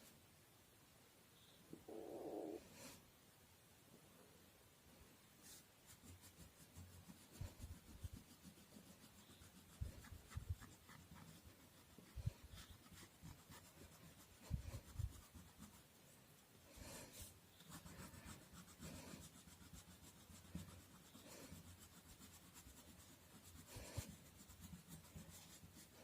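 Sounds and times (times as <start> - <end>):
colour scratching on paper: 5.4 - 26.0.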